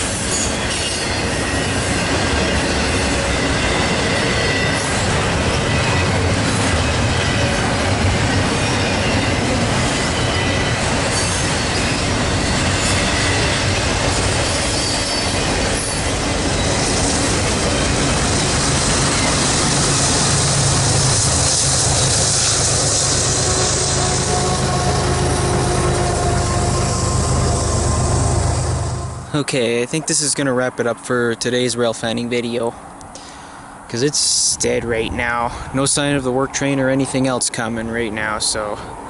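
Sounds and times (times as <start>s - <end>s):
high wheel squeals: 0.0s - 29.3s
railroad cars rolling past: 0.0s - 39.0s.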